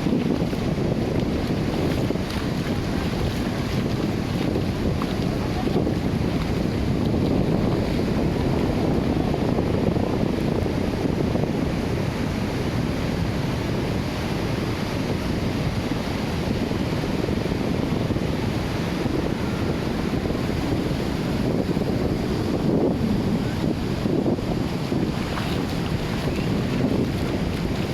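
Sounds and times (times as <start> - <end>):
wind buffeting microphone: 0.0 - 27.9.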